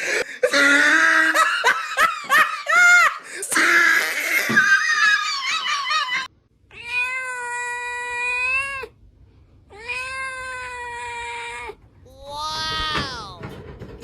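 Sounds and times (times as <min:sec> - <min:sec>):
cat meowing: 0:06.7 - 0:08.9.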